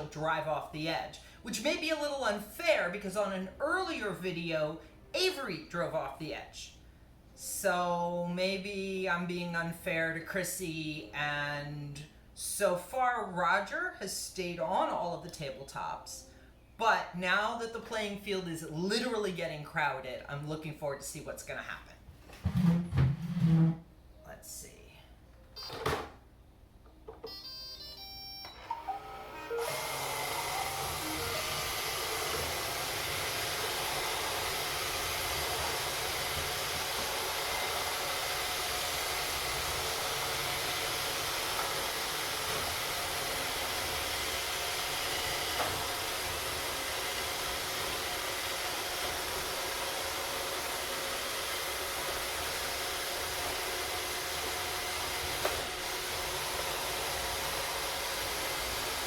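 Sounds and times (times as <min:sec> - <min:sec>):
robot vacuum motors whirring: 0:29.5 - 0:59.0.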